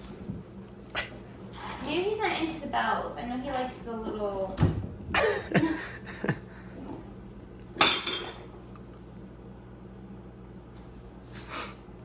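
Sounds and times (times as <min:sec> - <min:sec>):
small bells jingling: 0:01.6 - 0:04.6.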